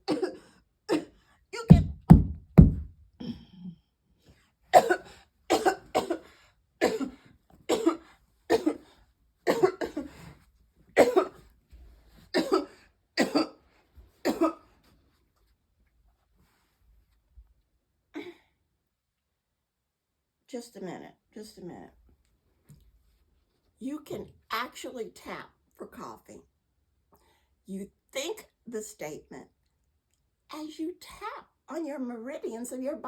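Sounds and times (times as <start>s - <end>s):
person coughing: 0.0s - 2.0s, 4.8s - 8.8s, 9.5s - 10.1s, 11.0s - 11.4s, 12.4s - 13.6s.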